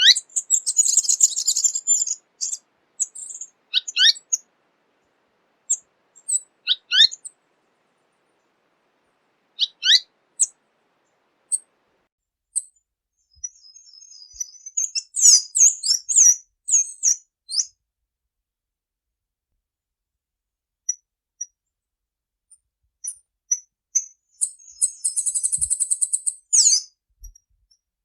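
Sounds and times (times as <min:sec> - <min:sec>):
bird twittering with trill: 0:00.0 - 0:07.5, 0:08.2 - 0:11.8, 0:24.4 - 0:26.8
bird chirping: 0:00.0 - 0:12.0, 0:12.6 - 0:17.2, 0:24.0 - 0:26.8.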